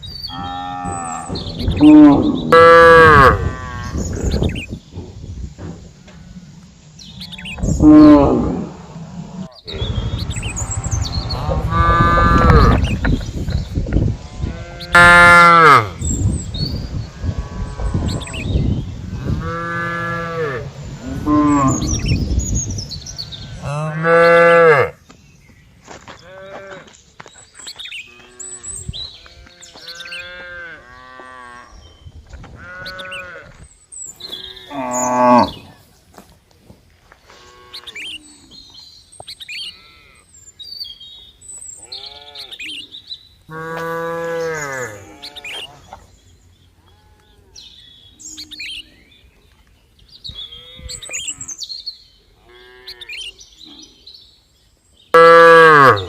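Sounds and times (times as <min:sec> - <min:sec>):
cattle mooing: 0:11.3 - 0:12.8, 0:55.2 - 0:56.0.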